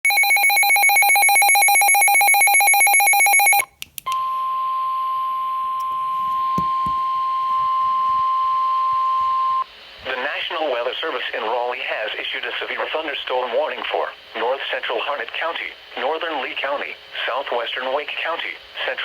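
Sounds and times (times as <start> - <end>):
clicks: 3.7 - 4.2
faint static hiss: 5.4 - 19.0.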